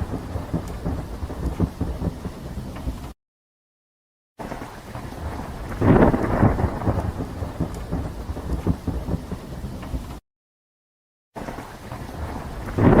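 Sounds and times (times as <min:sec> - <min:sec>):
low rumbling thunder: 0:00.0 - 0:03.2, 0:04.5 - 0:10.2, 0:11.5 - 0:13.0
steady rain: 0:00.0 - 0:03.2, 0:04.4 - 0:10.2, 0:11.4 - 0:13.0.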